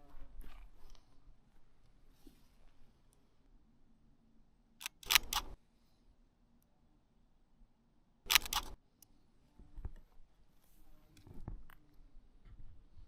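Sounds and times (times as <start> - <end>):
camera shutter clicks: 4.8 - 5.6, 8.3 - 8.8.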